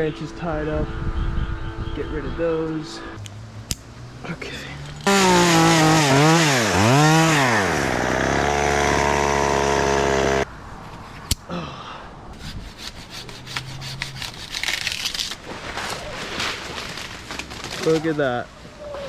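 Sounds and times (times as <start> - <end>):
chainsaw revving: 5.0 - 10.4.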